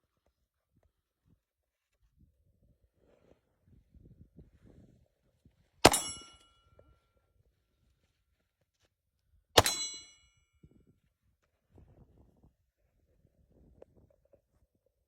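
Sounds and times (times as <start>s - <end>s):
pistol shots: 5.8s - 6.2s, 9.6s - 10.0s
bullet ringing on steel target: 5.8s - 6.9s, 9.6s - 10.6s.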